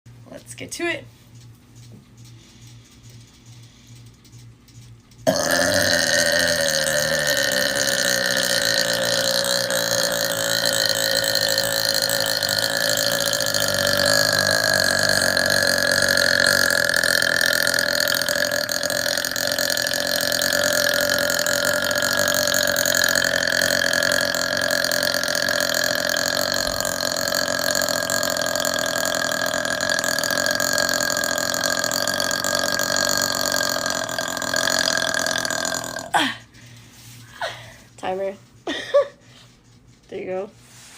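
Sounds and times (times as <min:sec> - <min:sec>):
woman burping: 0:05.3 - 0:36.5.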